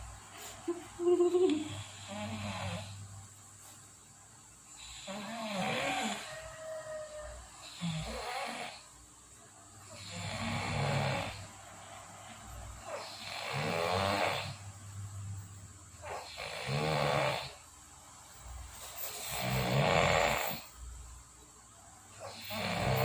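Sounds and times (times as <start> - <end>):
person snoring: 1.4 - 3.0, 4.7 - 8.9, 9.9 - 11.6, 12.8 - 14.6, 16.0 - 17.7, 19.1 - 20.7, 22.2 - 23.0.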